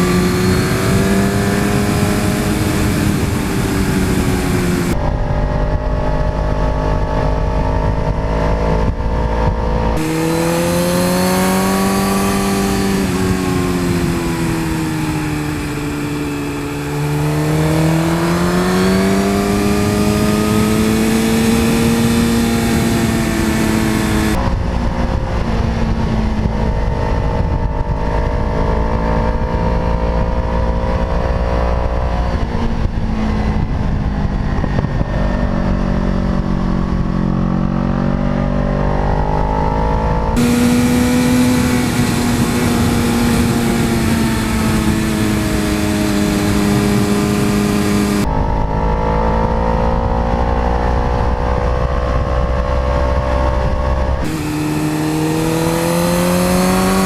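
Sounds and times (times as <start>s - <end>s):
motorcycle engine revving: 0.0s - 57.0s
steady low rumble: 4.6s - 10.0s.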